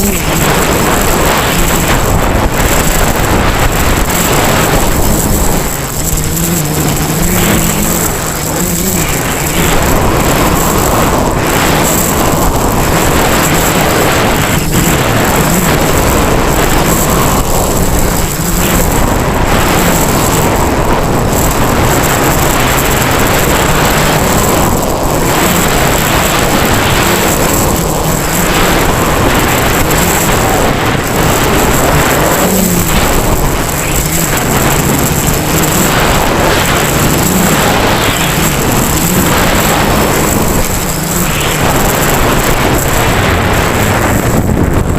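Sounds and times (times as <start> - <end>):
constant high whine: 0.0 - 44.9
quadcopter motors whirring: 0.0 - 44.9
wind rush on microphone: 0.0 - 44.9.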